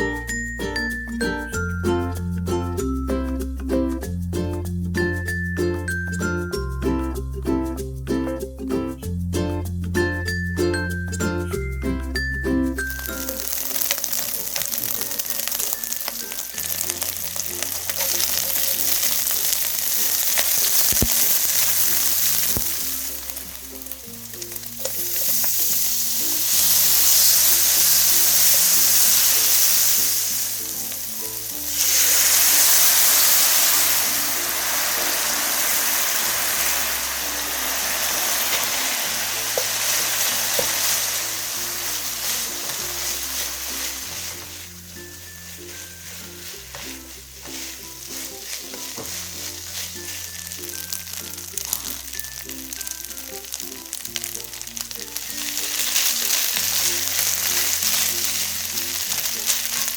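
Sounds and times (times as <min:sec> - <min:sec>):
background music with bass: 0:00.0 - 0:59.9
fried rice sizzling in a pan: 0:12.8 - 0:59.9.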